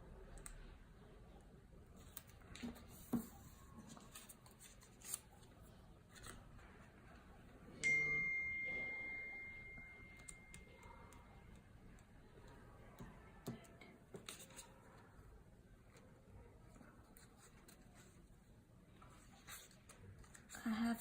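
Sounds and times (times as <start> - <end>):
single ringing tone: 7.8 - 10.7.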